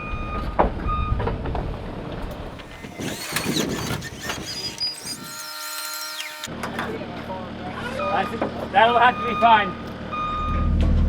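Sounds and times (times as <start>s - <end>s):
engine running under load: 2.3s - 6.5s
high squeaks: 2.5s - 6.5s.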